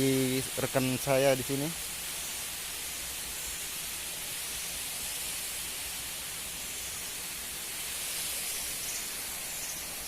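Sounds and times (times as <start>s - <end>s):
waterfall rushing: 0.0s - 10.0s.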